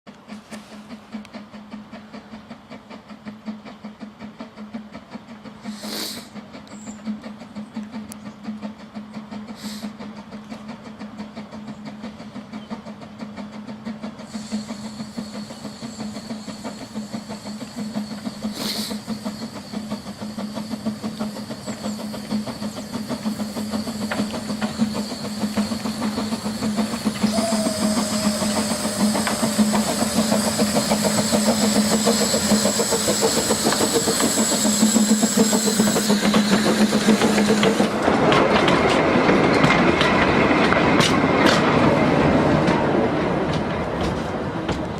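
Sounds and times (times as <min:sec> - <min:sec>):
steam train wheel clatter: 0:00.1 - 0:44.9
steam hiss: 0:00.2 - 0:38.1
high steady squeal: 0:14.3 - 0:37.9.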